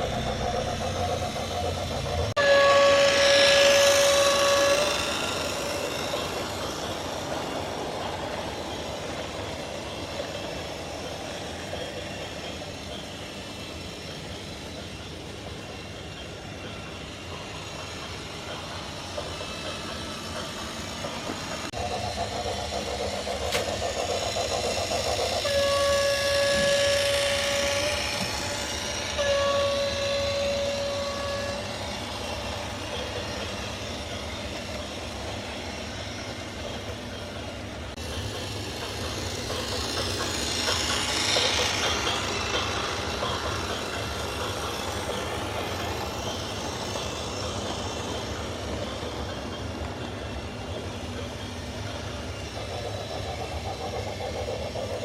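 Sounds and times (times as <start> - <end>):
horn blasts: 2.4 - 5.7, 25.4 - 31.7.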